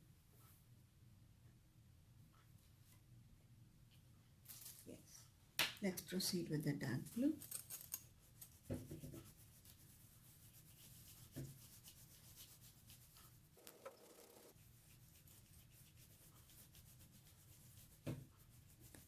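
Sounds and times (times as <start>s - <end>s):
pencil scratching on paper: 8.4s - 19.0s.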